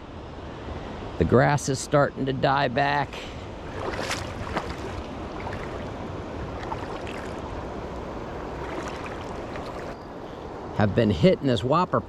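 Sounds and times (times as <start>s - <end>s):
river water flowing: 0.4s - 10.8s
small splashes: 3.6s - 7.7s, 8.4s - 10.0s.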